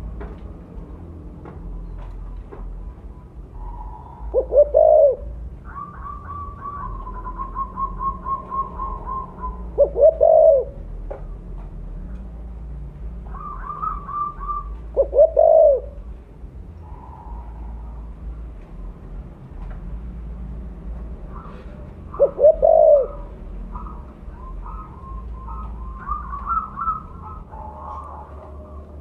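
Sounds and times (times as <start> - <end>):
dove cooing: 3.5 - 10.9, 13.3 - 16.2, 21.3 - 29.0.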